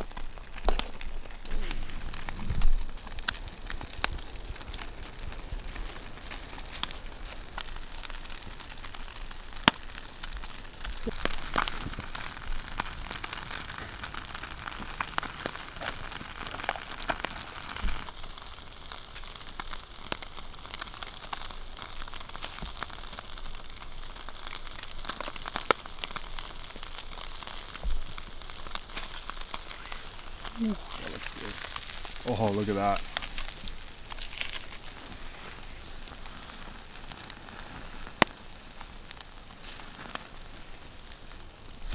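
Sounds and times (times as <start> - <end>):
fire crackling and popping: 0.0 - 41.9
fish sizzling on a grill: 0.0 - 41.9.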